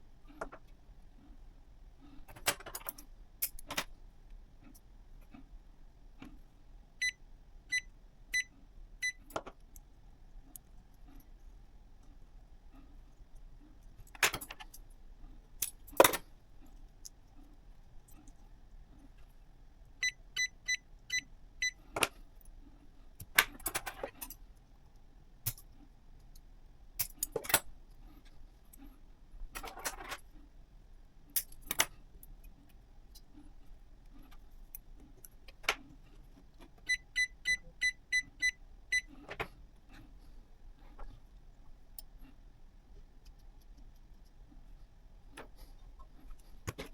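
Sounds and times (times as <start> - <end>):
small parts clicking and clattering: 2.1 - 5.5, 9.2 - 19.4, 21.8 - 30.4, 31.3 - 36.9, 45.3 - 46.9.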